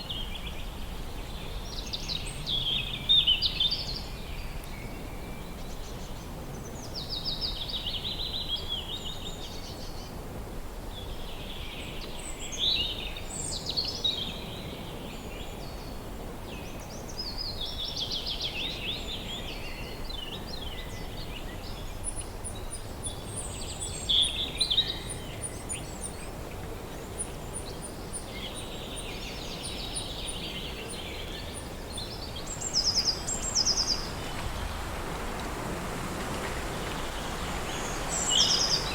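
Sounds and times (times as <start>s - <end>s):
wind through trees: 0.0s - 38.9s
songbirds singing trills: 16.6s - 38.9s.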